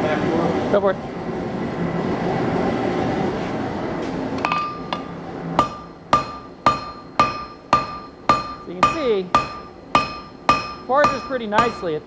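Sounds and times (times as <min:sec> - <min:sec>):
hammer ringing on metal anvil: 0:04.4 - 0:12.0.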